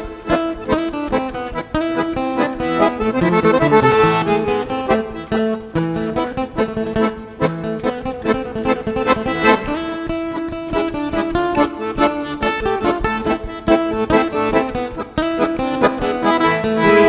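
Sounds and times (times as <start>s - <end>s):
accordion tune: 0.0s - 17.0s
plucked guitar: 0.0s - 17.0s
steady beat: 3.0s - 5.2s.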